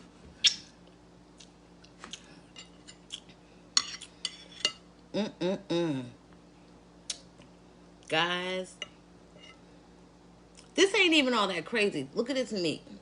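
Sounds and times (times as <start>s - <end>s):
wordless voice humming: 5.1s - 6.2s.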